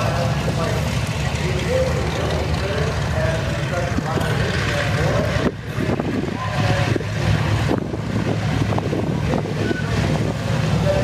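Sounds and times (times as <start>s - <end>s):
propeller engines droning: 0.0s - 11.0s
wind buffeting microphone: 3.7s - 11.0s.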